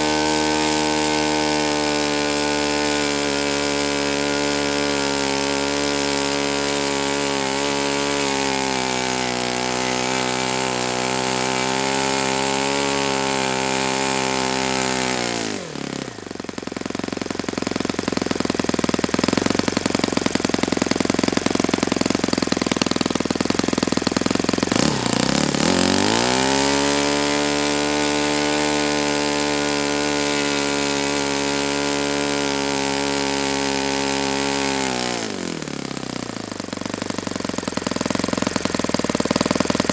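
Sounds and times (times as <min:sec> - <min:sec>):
model glow engine running: 0:00.0 - 0:39.9.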